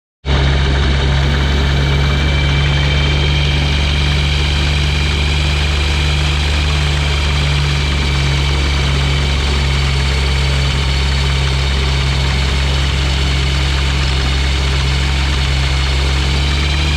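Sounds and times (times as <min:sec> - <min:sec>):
aircraft engine droning: 0:00.3 - 0:16.9.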